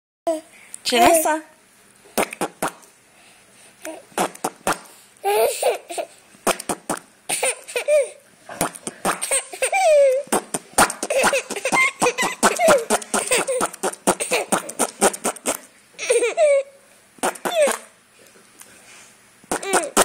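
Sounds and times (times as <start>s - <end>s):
young child laughing: 5.2s - 6.2s, 7.3s - 8.2s, 8.8s - 18.0s, 19.5s - 20.0s.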